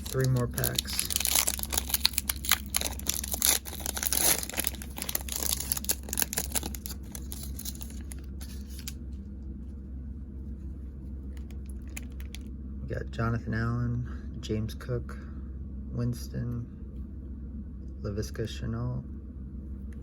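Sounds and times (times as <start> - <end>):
wrapper tearing and crinkling: 0.0 - 9.0.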